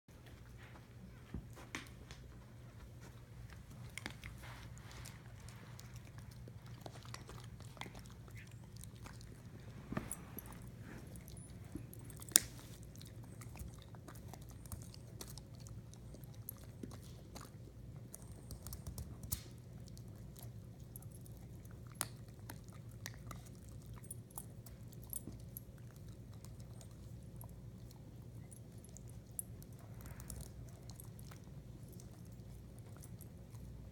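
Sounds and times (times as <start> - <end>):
steady low hum: 0.1 - 33.9
chewing crunches: 3.7 - 9.7.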